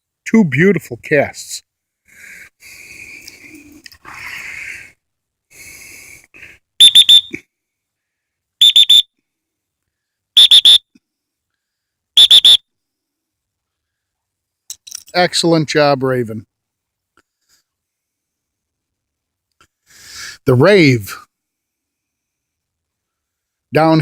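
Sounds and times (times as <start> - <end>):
dog whistle toots: 6.8 - 7.4, 8.6 - 9.1, 10.4 - 10.8, 12.2 - 12.6.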